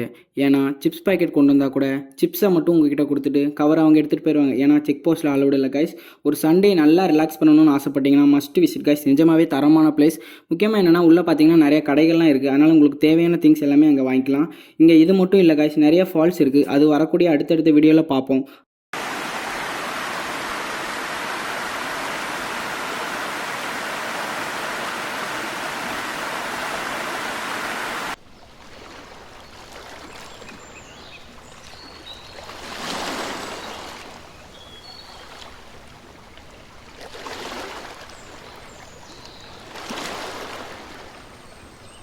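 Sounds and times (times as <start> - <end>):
waterfall rushing: 19.0 - 28.2
flowing water: 19.0 - 42.0.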